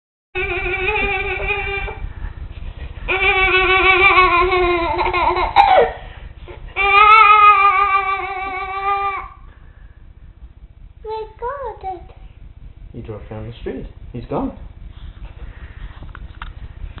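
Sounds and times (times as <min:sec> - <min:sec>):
child's high wavering ooo calls: 0:00.4 - 0:02.0, 0:03.1 - 0:05.6, 0:06.8 - 0:09.4.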